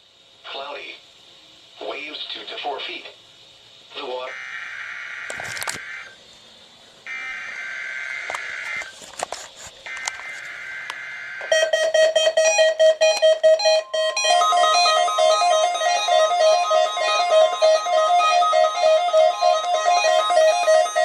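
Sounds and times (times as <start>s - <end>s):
digital data burst screech: 9.8s - 21.0s
electronic alert beep melody: 11.4s - 21.0s.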